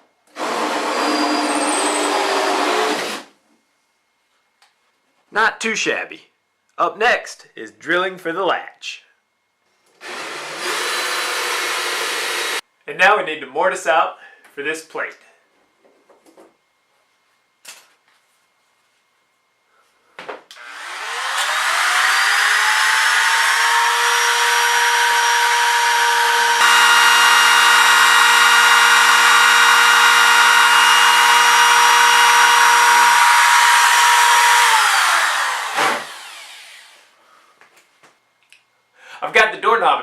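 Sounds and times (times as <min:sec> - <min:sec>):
trim router whining: 0:00.3 - 0:03.3, 0:10.0 - 0:12.6, 0:20.5 - 0:37.1.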